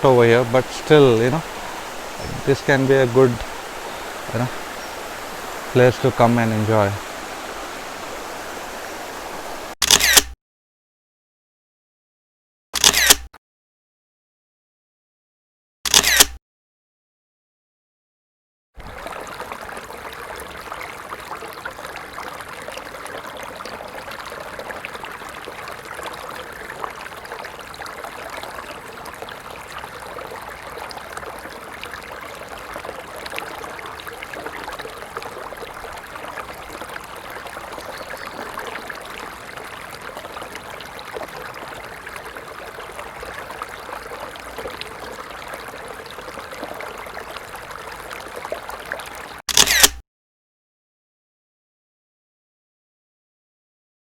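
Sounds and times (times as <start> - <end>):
stream running: 0.0 - 9.8, 18.8 - 49.9.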